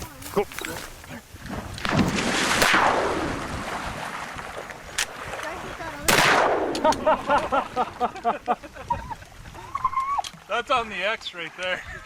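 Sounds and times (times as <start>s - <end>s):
loud shotgun shot: 1.8s - 3.3s, 6.1s - 7.1s.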